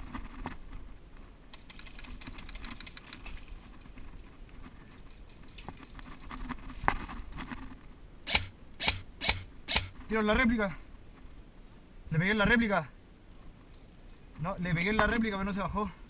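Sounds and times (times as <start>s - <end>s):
gear clicking and rustling: 1.5s - 7.9s
airsoft gun firing cracks: 8.3s - 10.0s.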